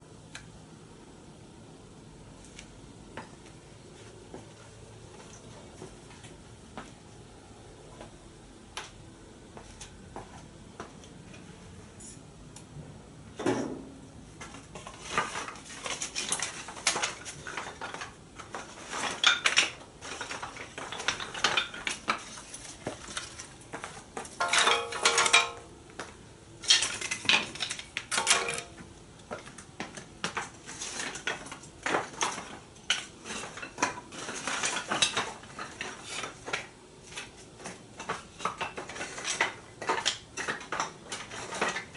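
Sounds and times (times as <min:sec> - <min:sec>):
metal objects clattering: 0:14.8 - 0:23.5, 0:24.2 - 0:25.7, 0:26.6 - 0:28.9, 0:30.7 - 0:36.6
ringing metal clang: 0:24.4 - 0:25.7, 0:28.2 - 0:28.8.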